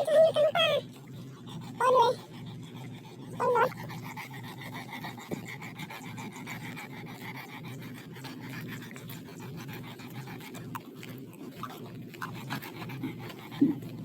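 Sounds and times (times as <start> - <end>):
dog panting rapidly: 0.0 - 14.0.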